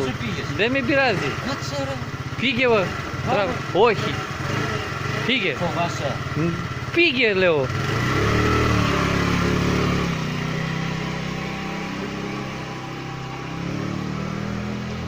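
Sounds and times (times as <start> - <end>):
scooter engine running: 0.0 - 15.0.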